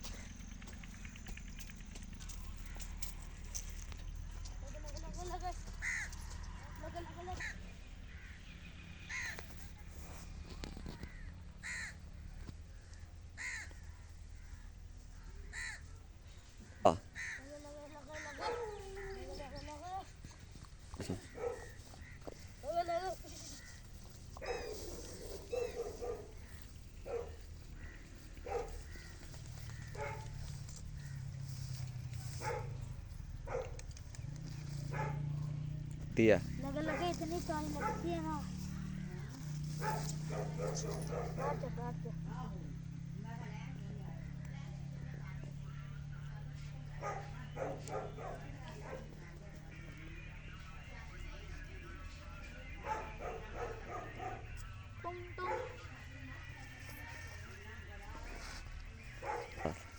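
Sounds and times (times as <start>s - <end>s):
dog barking: 18.2s - 19.2s, 21.1s - 22.2s, 24.4s - 29.1s, 29.7s - 31.2s, 32.1s - 33.9s, 34.8s - 35.7s, 36.5s - 42.0s, 45.1s - 50.8s, 52.4s - 54.6s, 55.4s - 56.2s, 59.0s - 59.9s.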